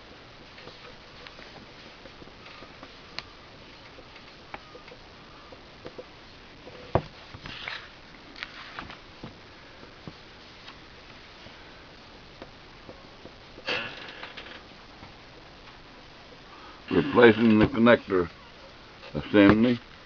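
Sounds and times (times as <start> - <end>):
booklet pages turning: 7.3 - 9.0
paper rustle: 7.4 - 9.0.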